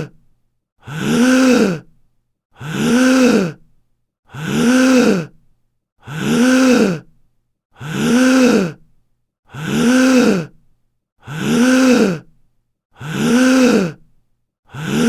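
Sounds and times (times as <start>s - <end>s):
man gasping: 0.8s - 2.0s, 2.6s - 3.7s, 4.3s - 5.4s, 6.0s - 7.2s, 11.2s - 12.4s, 14.7s - 15.0s.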